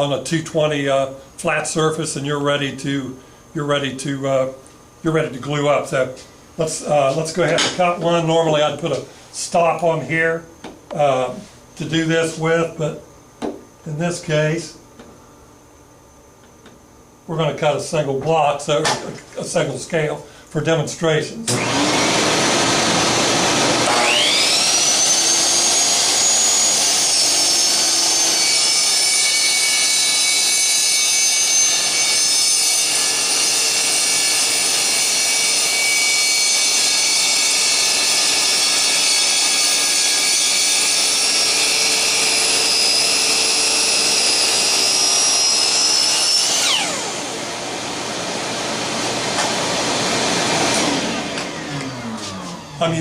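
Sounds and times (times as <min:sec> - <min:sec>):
miter saw whine: 0:21.5 - 0:53.0.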